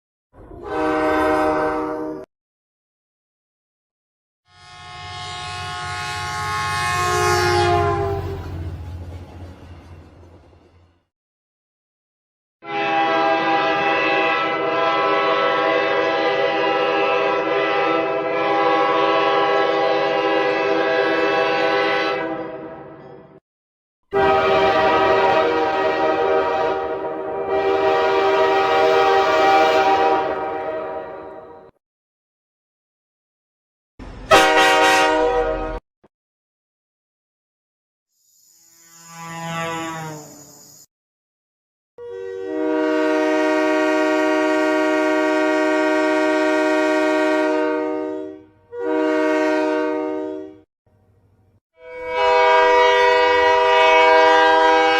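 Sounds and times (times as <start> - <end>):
train horn blast: 0.4 - 2.3, 4.5 - 8.7, 12.6 - 23.0, 24.1 - 31.8, 34.3 - 35.8, 42.0 - 50.7, 51.7 - 54.9.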